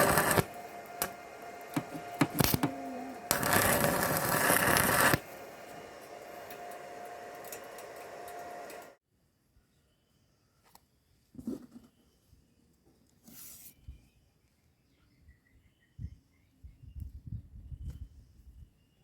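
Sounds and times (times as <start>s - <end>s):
steady hum: 0.0s - 9.0s
welding arc crackling: 0.0s - 9.0s.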